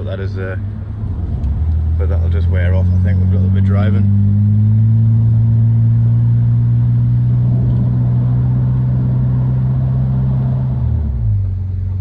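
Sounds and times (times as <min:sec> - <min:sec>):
car engine running: 0:00.0 - 0:12.0
road noise: 0:00.0 - 0:12.0.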